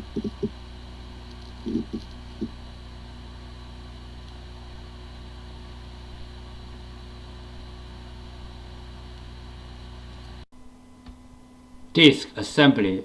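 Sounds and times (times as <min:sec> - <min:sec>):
short low bursts: 0:00.0 - 0:10.1
hard drive spinning hum: 0:00.0 - 0:11.9.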